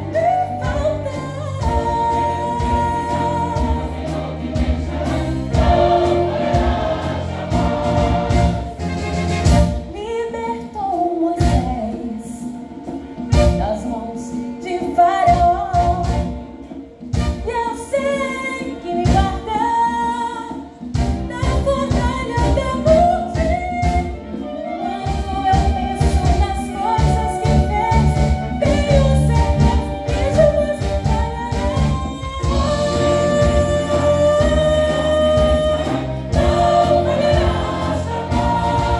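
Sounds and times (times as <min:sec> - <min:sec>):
choir singing gospel music: 0:00.0 - 0:10.0, 0:11.4 - 0:38.9
band accompaniment: 0:00.0 - 0:38.9
drum strikes: 0:00.7 - 0:10.0.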